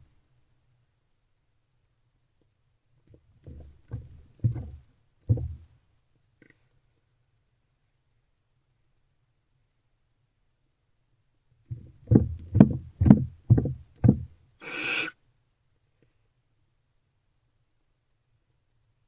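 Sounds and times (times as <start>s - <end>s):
heavy thumps on wooden box: 3.4s - 5.6s, 11.7s - 14.4s
owl hiss: 14.6s - 15.2s.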